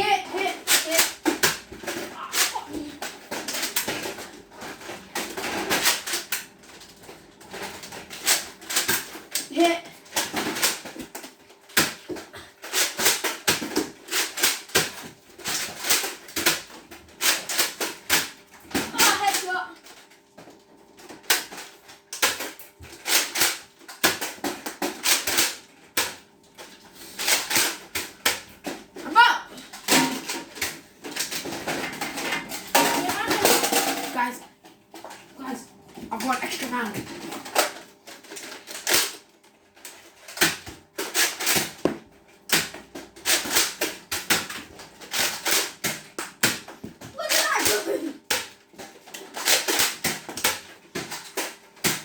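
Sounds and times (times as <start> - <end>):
foam-dart blaster clicks and thwacks: 0.6 - 4.3, 5.2 - 6.5, 7.5 - 20.0, 21.0 - 26.2, 36.2 - 39.2, 39.8 - 52.0.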